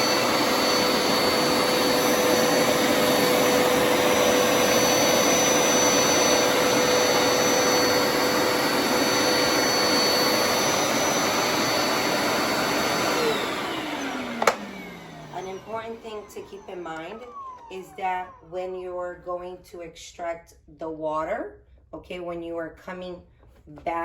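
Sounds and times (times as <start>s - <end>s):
carpet cleaner motor whining: 0.0s - 19.0s.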